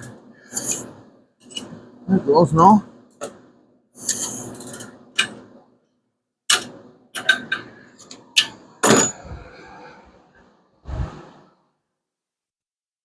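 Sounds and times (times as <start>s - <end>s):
heavy metal clank: 8.8s - 9.4s.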